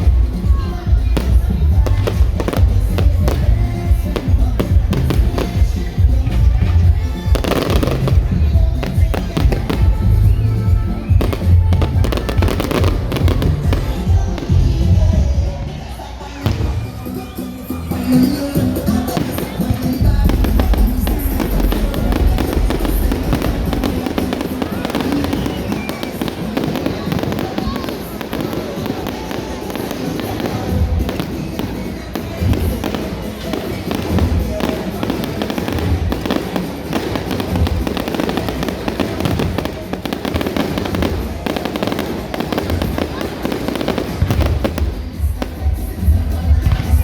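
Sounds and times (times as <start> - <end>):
fireworks cracks and pops: 0.0 - 14.8, 16.4 - 47.0
music playing: 0.0 - 47.0
low firework booms: 19.7 - 25.9.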